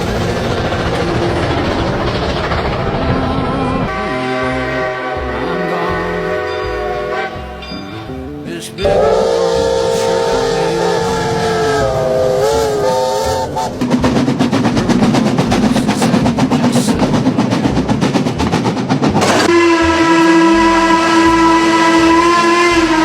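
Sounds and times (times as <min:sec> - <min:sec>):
steam locomotive chuffing: 0:00.0 - 0:23.0
steam whistle: 0:03.9 - 0:07.5, 0:08.8 - 0:13.9, 0:19.3 - 0:23.0.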